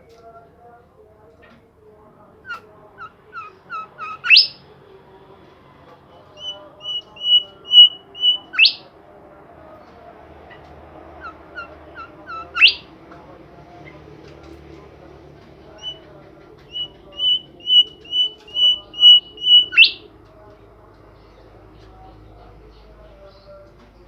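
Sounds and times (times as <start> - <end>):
faint low background noise: 0.0 - 24.0
songbird chirping and whistling: 2.5 - 4.6, 6.3 - 8.9, 11.2 - 12.9, 15.7 - 20.1.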